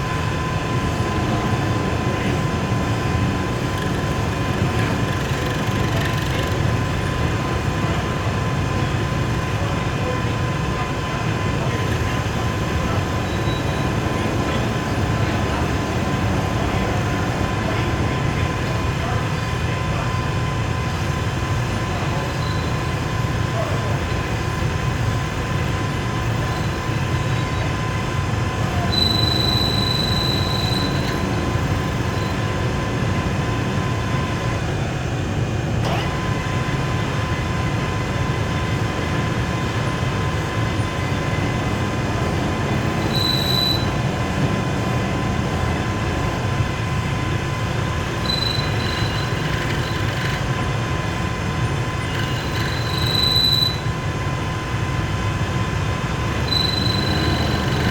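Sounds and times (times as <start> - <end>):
lathe running with whine: 0.0 - 57.9
high-pitched squeal: 56.3 - 57.9.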